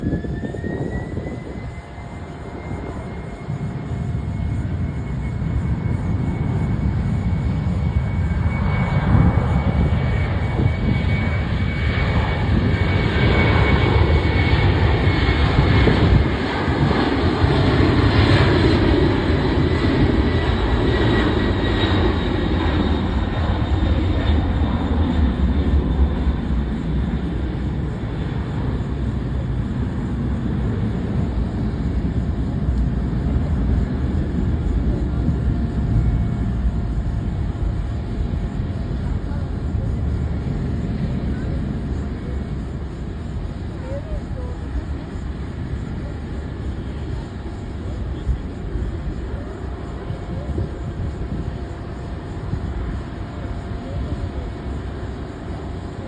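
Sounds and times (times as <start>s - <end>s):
jet engine whine: 0.0s - 56.0s
jet rumble: 0.0s - 56.0s.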